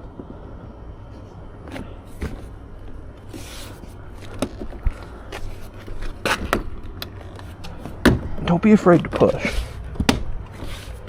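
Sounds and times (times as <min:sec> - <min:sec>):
scraping rustle: 0:03.2 - 0:06.5, 0:10.5 - 0:11.0.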